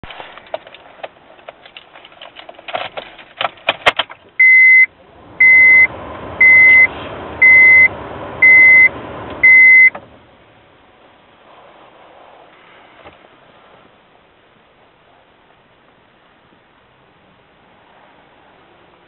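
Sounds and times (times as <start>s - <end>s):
clicks and rustling: 0.0s - 4.4s
high electronic beeps: 4.4s - 9.9s.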